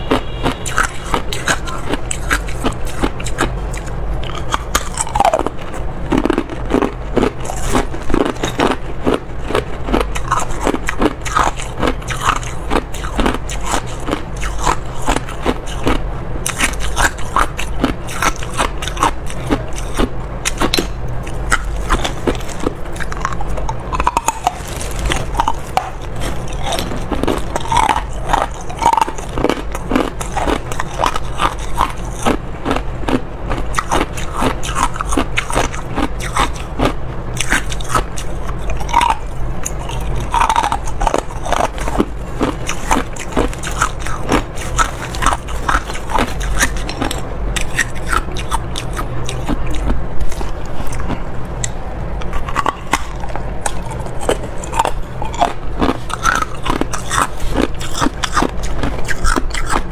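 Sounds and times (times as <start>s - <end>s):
ice being chewed: 0.0s - 59.9s.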